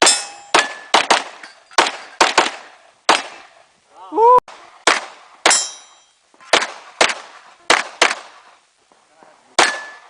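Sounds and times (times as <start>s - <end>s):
gunshots: 0.0s - 3.5s, 4.8s - 5.7s, 6.5s - 8.5s.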